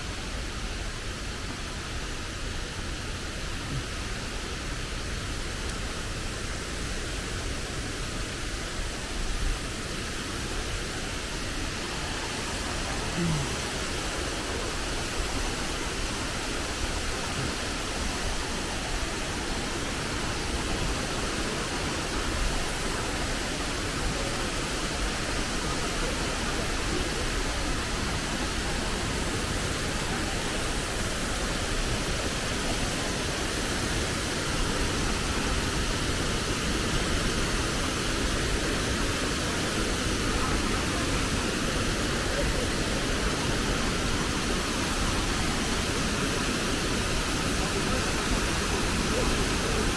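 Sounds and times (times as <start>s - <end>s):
waterfall rushing: 0.0s - 49.9s.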